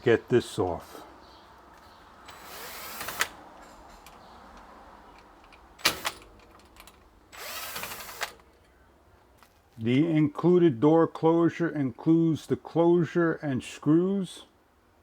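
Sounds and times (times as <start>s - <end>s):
cordless drill backing out screws: 2.3s - 3.4s, 5.8s - 6.3s, 7.3s - 8.4s.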